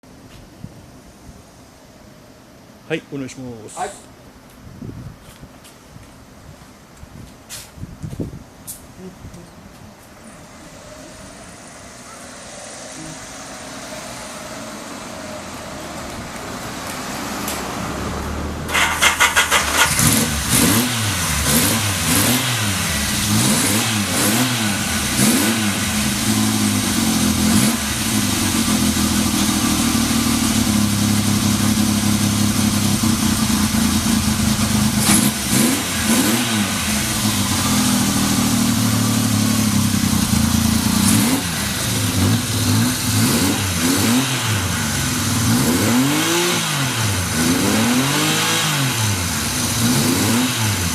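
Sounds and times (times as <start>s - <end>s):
motorcycle engine revving: 10.3s - 50.9s
electric starter cranking: 18.7s - 25.8s
motorcycle engine idling: 24.7s - 43.8s.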